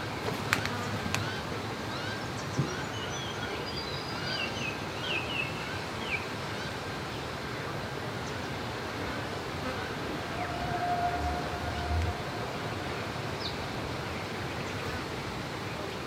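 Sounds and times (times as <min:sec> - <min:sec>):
outdoor background hiss: 0:00.0 - 0:16.0
steady hum: 0:09.2 - 0:15.1
birds chirping: 0:10.2 - 0:14.9.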